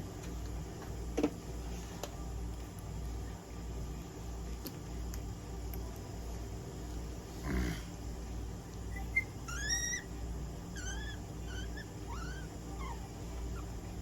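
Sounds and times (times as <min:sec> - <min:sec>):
guinea pig squeaking: 0:08.8 - 0:14.0.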